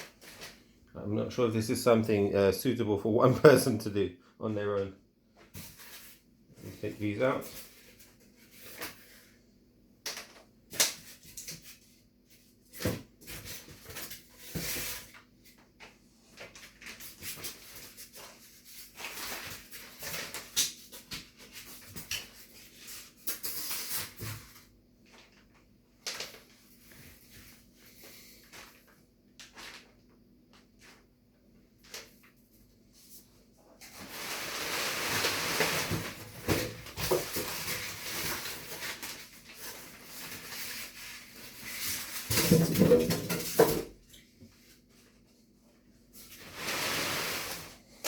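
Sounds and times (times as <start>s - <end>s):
polystyrene scraping and rustling: 16.4s - 25.5s, 33.8s - 43.8s, 46.1s - 48.0s.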